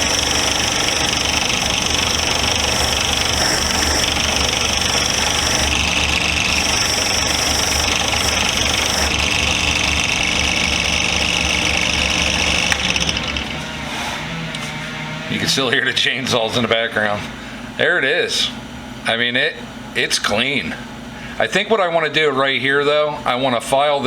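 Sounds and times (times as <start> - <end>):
chainsaws running: 0.0 - 14.5
loud machine drone: 0.0 - 15.4.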